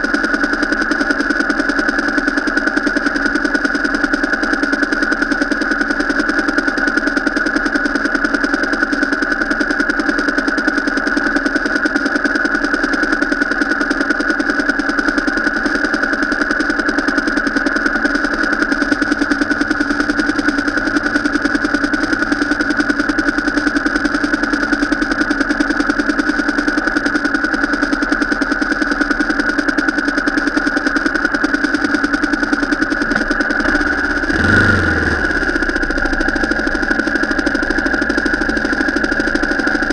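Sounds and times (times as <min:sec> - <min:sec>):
vehicle engine droning steadily: 0:00.0 - 0:39.9.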